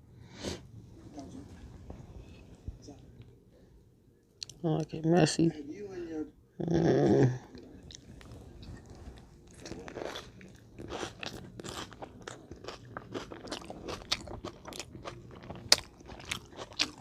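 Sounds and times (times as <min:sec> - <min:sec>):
person chewing and crunching: 0:07.8 - 0:17.0.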